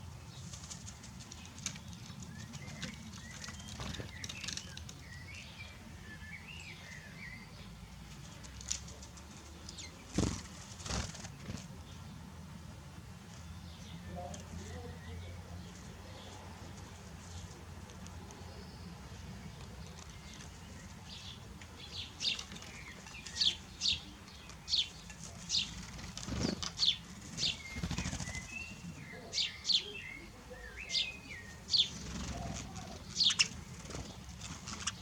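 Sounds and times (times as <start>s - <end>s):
small bird chirping: 19.5s - 35.0s.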